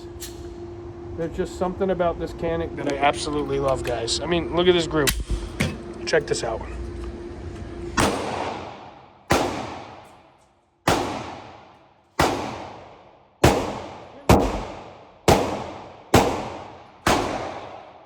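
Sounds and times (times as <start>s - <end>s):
pistol shots echoing: 8.0s - 10.2s, 10.8s - 18.0s.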